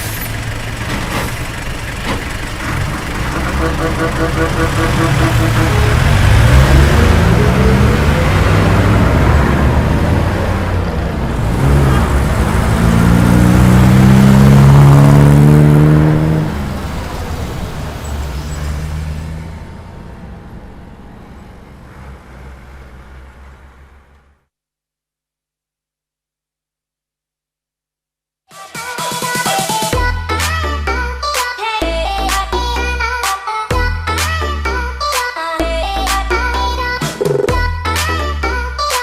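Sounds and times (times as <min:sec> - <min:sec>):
bus engine accelerating: 0:00.0 - 0:24.4.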